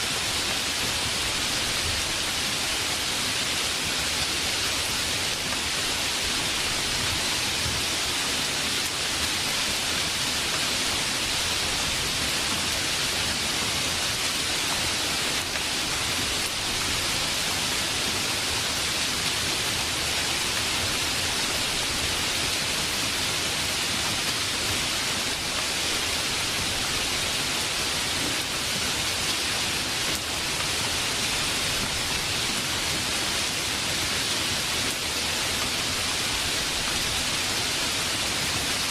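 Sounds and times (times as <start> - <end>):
heavy rain hiss: 0.0 - 38.9.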